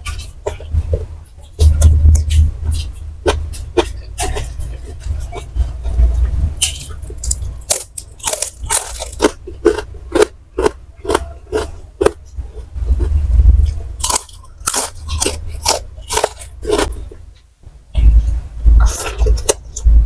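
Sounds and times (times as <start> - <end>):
chewing crunchy fried snacks: 0.0 - 17.2, 18.8 - 19.9.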